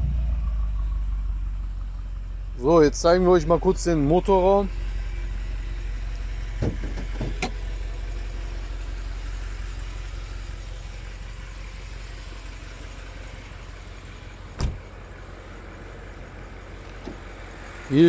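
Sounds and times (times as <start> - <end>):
car engine idling: 0.0 - 18.0
sharp thump: 6.6 - 7.6, 14.6 - 14.9.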